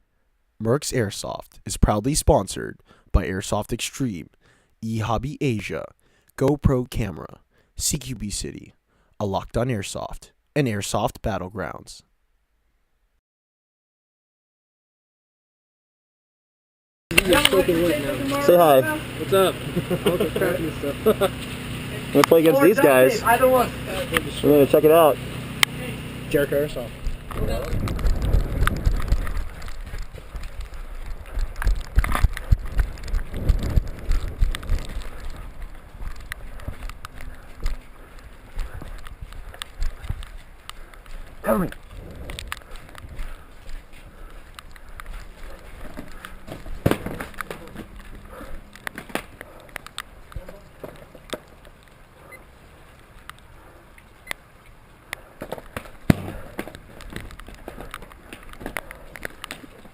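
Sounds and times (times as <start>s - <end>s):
rain and wind on microphone: 27.0s - 53.6s
camera gear knocks and thumps: 27.8s - 37.8s.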